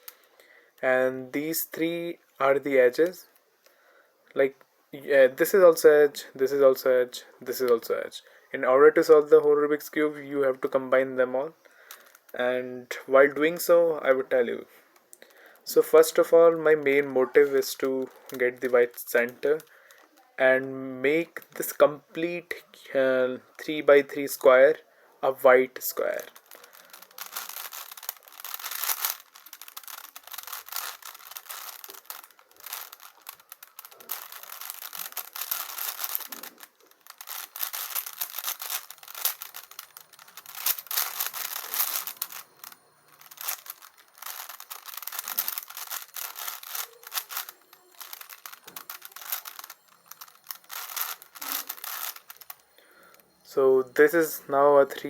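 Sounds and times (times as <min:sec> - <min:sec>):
puzzle cube plastic layers clicking: 0:25.8 - 0:52.7.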